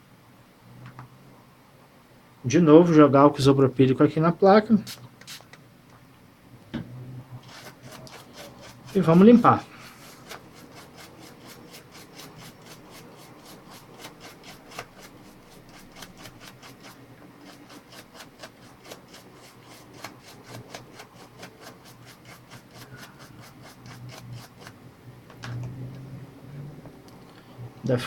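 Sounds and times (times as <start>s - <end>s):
brush scrubbing circuit board: 7.4s - 24.8s.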